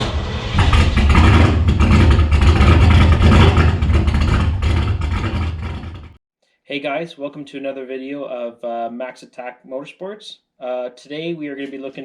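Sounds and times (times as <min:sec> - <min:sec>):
rotary engine running loudly: 0:00.0 - 0:06.2.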